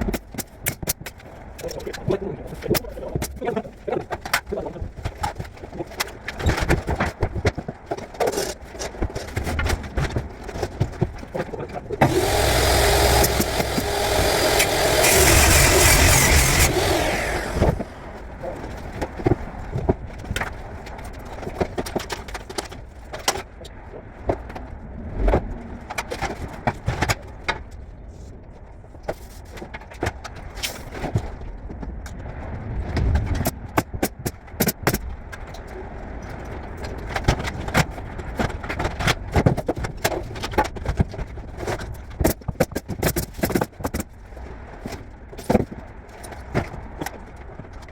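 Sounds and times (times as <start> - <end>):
tools and wood knocking: 12.0 - 17.8
loud power tool running: 12.0 - 18.2.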